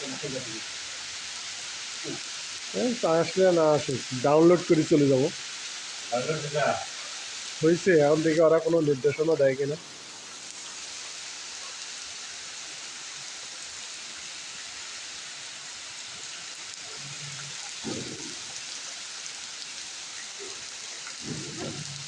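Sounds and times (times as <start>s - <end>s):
rain falling: 0.0s - 22.0s.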